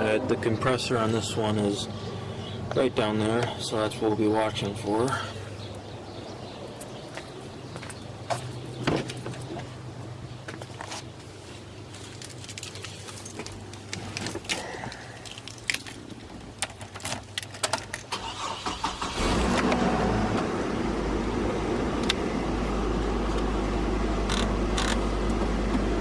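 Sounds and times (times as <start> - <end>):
car engine starting and running: 17.5 - 26.0.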